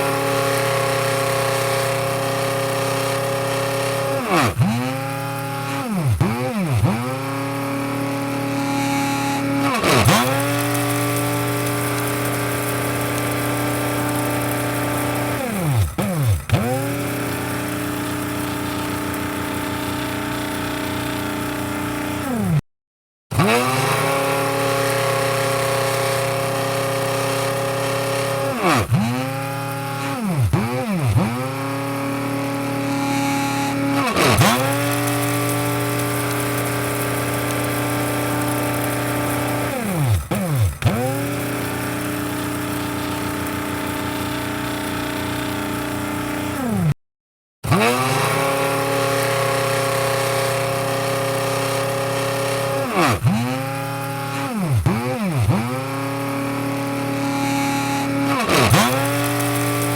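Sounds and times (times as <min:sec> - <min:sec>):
coffee grinder motor whining: 0:00.0 - 0:22.6, 0:23.3 - 0:47.0, 0:47.6 - 0:59.9.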